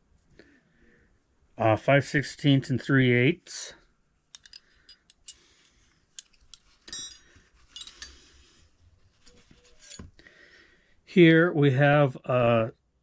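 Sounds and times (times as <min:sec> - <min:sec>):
metal wrenches clinking: 0:04.4 - 0:08.3, 0:09.2 - 0:10.2.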